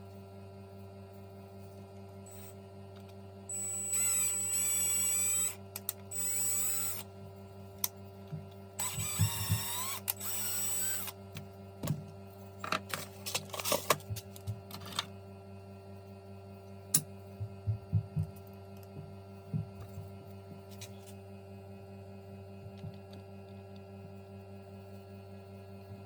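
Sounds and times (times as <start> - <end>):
power drill running: 2.3 - 2.5, 3.5 - 7.0, 8.8 - 11.2.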